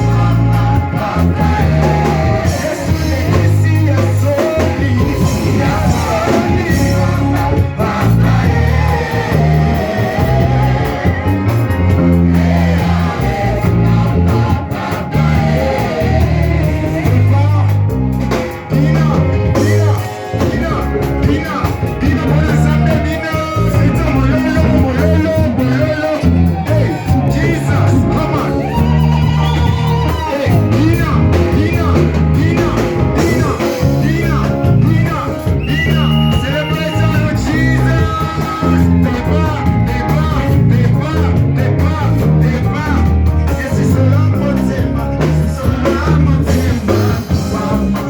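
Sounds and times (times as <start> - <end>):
praise band music with singing: 0.0 - 48.0
repeating bass line: 0.0 - 48.0.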